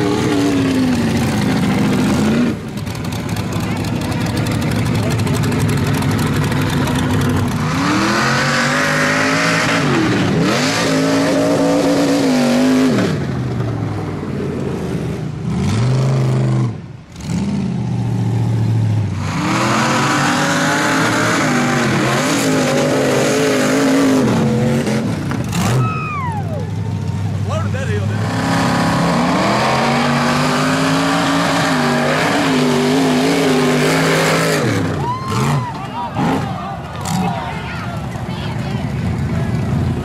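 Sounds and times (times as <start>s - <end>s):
engine revving hard: 7.5s - 13.3s, 19.2s - 25.9s, 28.0s - 35.6s.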